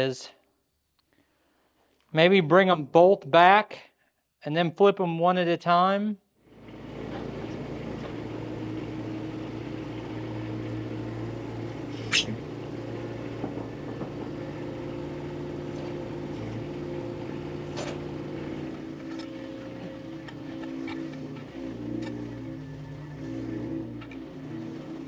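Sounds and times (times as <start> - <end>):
engine running steadily: 6.5 - 25.0.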